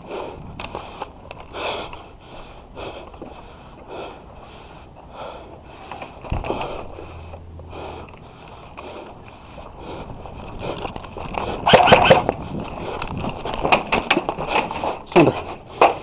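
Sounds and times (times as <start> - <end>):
heavy breathing: 0.0 - 13.5, 14.4 - 16.0
sharp clicks: 11.6 - 12.4.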